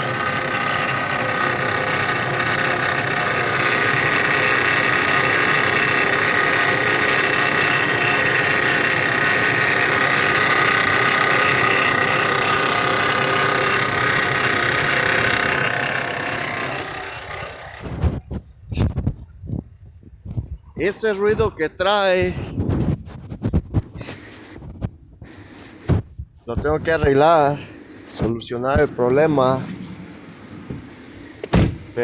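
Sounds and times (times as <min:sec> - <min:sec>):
car engine running: 0:00.0 - 0:18.0
high engine whine: 0:00.0 - 0:18.3.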